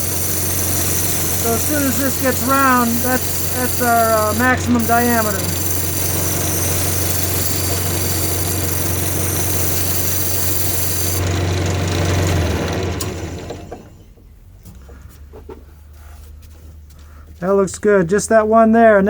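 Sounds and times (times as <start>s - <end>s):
turning tool cutting wood: 0.0s - 13.7s
wood lathe humming: 0.0s - 13.8s
lathe winding down: 0.0s - 14.0s.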